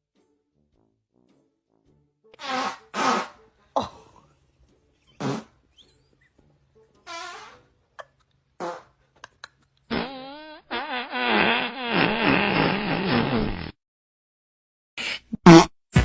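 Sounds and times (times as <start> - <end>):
wavering fart noises: 2.4 - 3.4, 5.1 - 5.6, 7.0 - 9.0, 9.9 - 13.8, 15.4 - 16.0.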